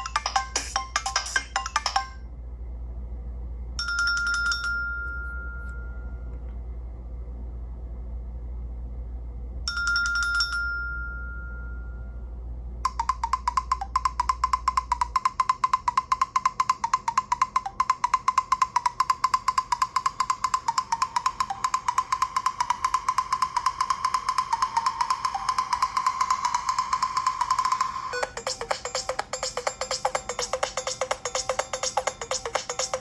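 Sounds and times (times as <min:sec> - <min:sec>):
wood-block-like knocking ringtone: 0:00.0 - 0:02.2, 0:12.9 - 0:33.0
bell-like ringtone chime: 0:03.8 - 0:06.3, 0:09.7 - 0:12.3, 0:18.8 - 0:33.0.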